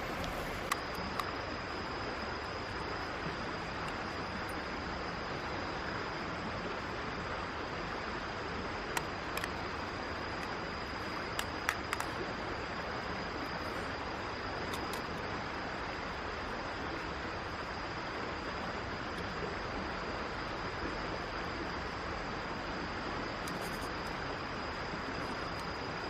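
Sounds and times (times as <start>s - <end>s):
mountain stream rushing: 0.0s - 16.4s.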